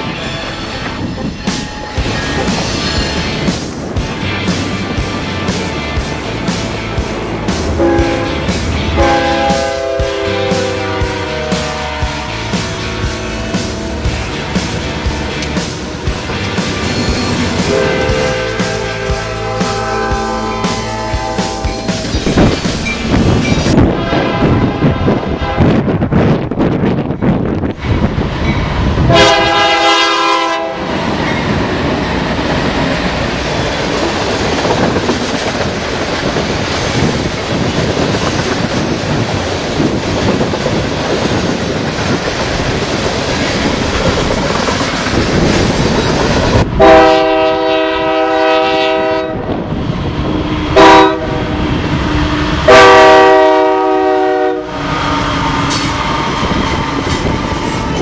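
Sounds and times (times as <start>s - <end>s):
train wheels clattering on rail: 0.0s - 58.0s
locomotive air horn: 7.8s - 12.5s, 17.7s - 22.0s, 23.8s - 25.8s, 29.1s - 30.9s, 46.8s - 49.5s, 50.7s - 56.3s.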